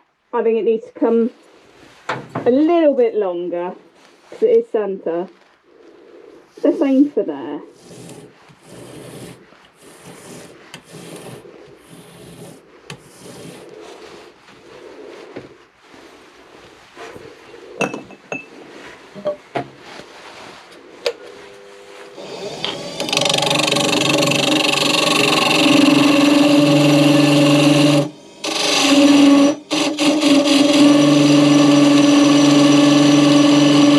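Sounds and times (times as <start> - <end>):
rasping strokes on wood: 7.6 - 16.2, 22.0 - 33.9
woodturning lathe running: 7.7 - 14.2, 21.4 - 33.9.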